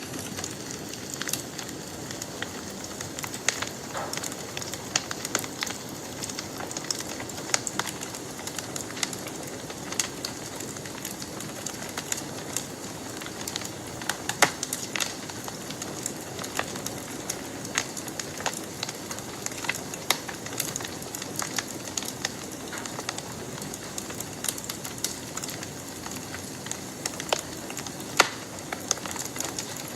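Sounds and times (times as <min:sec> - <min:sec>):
campfire crackling: 0:00.0 - 0:29.9.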